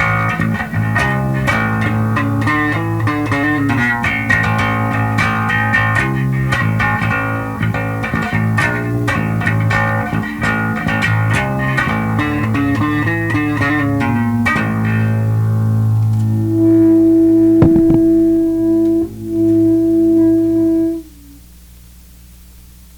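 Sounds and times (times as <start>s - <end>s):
amp feedback tone: 16.2s - 21.4s
electric bass riff: 17.6s - 19.5s.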